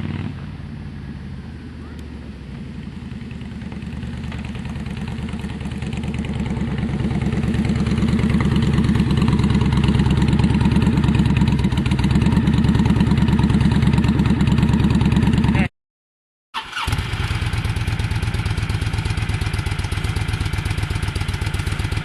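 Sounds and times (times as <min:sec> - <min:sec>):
motorcycle engine idling: 0:00.1 - 0:15.7, 0:16.6 - 0:22.0.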